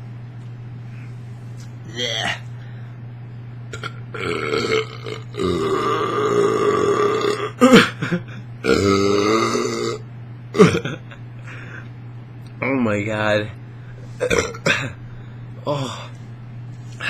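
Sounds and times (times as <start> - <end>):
man burping loudly: 1.9 - 2.4, 3.7 - 8.0, 8.6 - 10.0, 10.6 - 11.0, 14.2 - 15.0.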